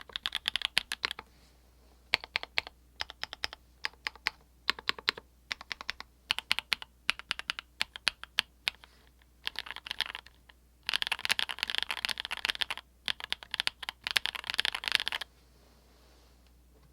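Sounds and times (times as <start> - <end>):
mechanical keyboard typing: 0.0 - 1.2, 2.1 - 8.5, 9.4 - 15.2.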